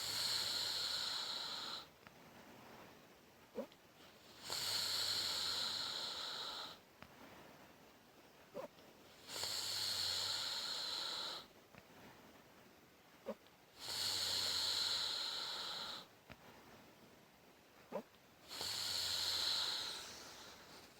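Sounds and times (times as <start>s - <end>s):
woman snoring: 0.0s - 1.9s, 4.3s - 6.8s, 8.6s - 11.5s, 13.3s - 16.1s, 17.9s - 20.7s.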